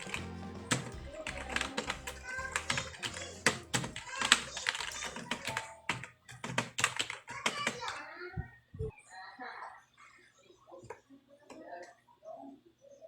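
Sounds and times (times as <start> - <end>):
background music: 0.0 - 6.2
keyboard keys clicking: 0.0 - 8.0.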